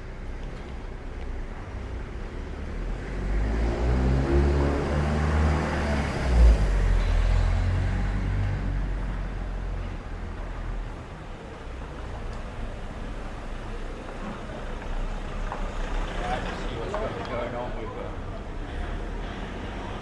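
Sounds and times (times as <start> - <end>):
vehicle engine passing by: 2.6 - 9.4.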